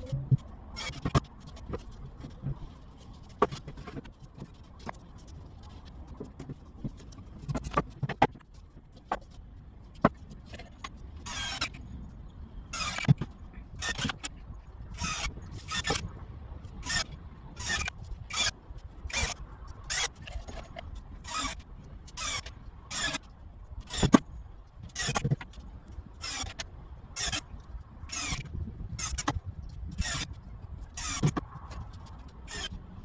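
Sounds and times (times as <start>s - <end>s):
scraping strokes on wood: 30.0s - 32.8s.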